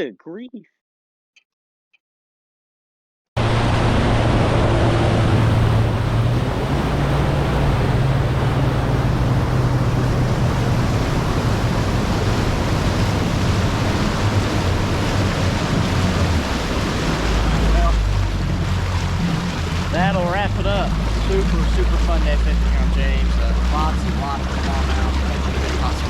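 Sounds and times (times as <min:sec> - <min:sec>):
wind rush over microphone: 0:03.4 - 0:21.5
outboard motor humming: 0:03.4 - 0:26.0
water noise: 0:03.4 - 0:26.0.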